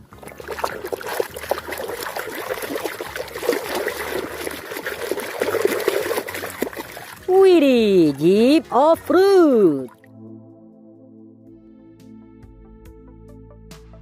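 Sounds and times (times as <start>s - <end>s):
water trickling and splashing: 0.0s - 10.1s.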